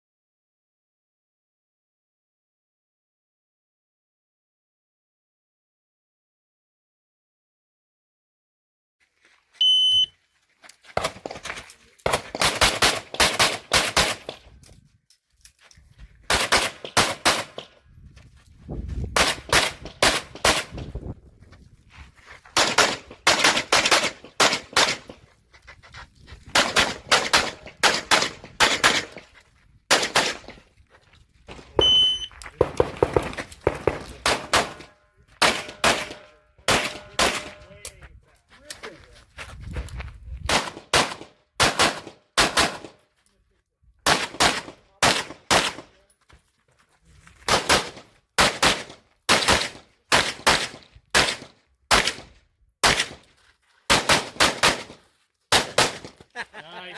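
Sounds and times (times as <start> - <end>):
shot timer beep: 9.6 - 10.1, 31.8 - 32.3
pistol shots: 12.0 - 14.4, 16.3 - 17.7, 19.2 - 20.8, 22.6 - 25.2, 26.5 - 29.2, 29.9 - 30.6, 32.6 - 37.7, 40.5 - 43.0, 44.0 - 45.9, 47.5 - 53.2, 53.9 - 56.2.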